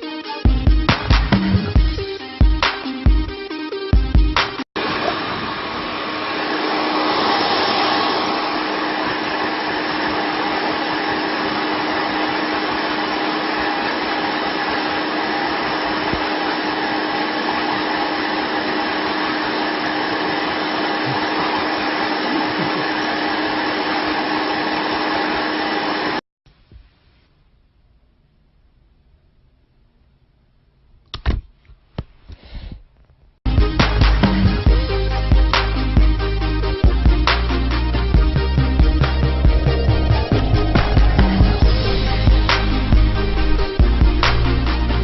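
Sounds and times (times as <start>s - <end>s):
electric motor whirring with rushing air: 4.8s - 26.2s, 36.2s - 45.0s.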